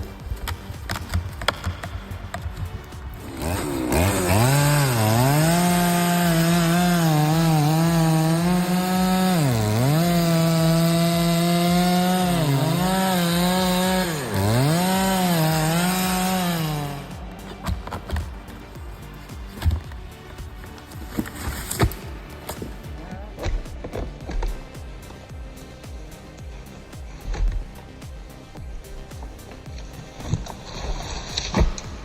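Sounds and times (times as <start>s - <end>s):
chainsaw cutting tree trunk: 0.0s - 32.0s.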